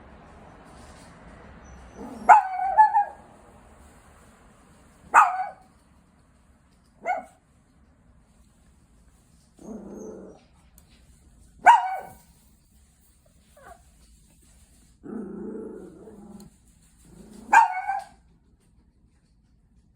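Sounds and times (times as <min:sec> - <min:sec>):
small dog barking: 0:02.0 - 0:03.3, 0:05.1 - 0:05.7, 0:07.0 - 0:07.4, 0:11.6 - 0:12.3, 0:17.4 - 0:18.2
dog growling low: 0:09.6 - 0:10.5, 0:15.0 - 0:17.5.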